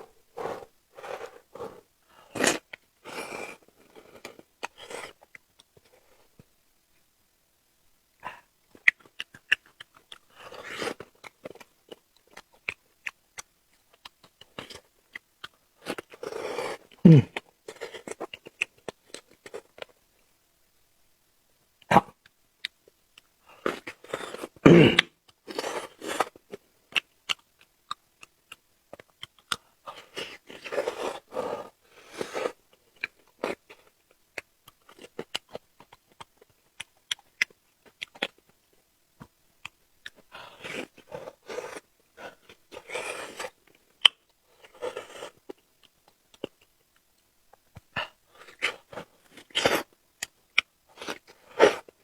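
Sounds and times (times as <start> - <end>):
chewing and crunching food: 8.7 - 20.1, 22.2 - 52.0.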